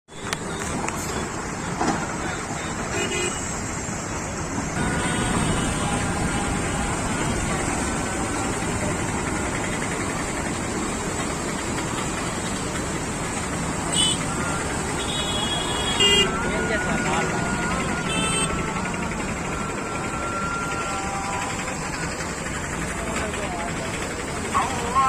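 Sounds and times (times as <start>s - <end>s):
passing vehicles: 0.1s - 25.0s
horn tooting: 2.5s - 3.7s, 4.8s - 8.9s, 13.8s - 21.7s.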